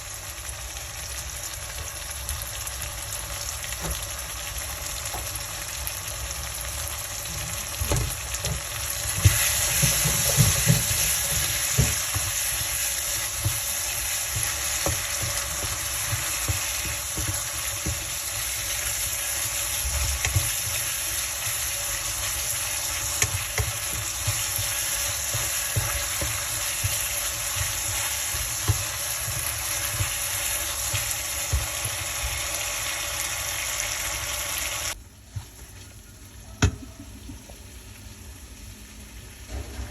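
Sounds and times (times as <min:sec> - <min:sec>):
food sizzling in a pan: 0:00.0 - 0:39.9
spoon stirring in a pan: 0:07.3 - 0:34.1.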